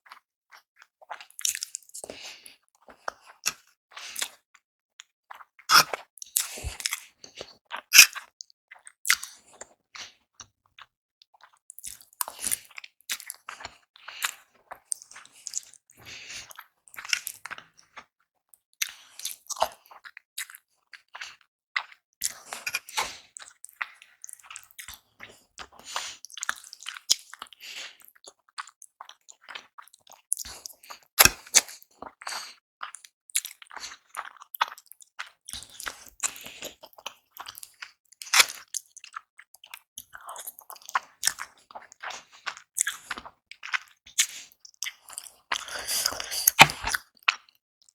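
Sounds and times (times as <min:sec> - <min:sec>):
wet chewing and smacking: 0:00.0 - 0:47.9
slurping: 0:44.2 - 0:47.5.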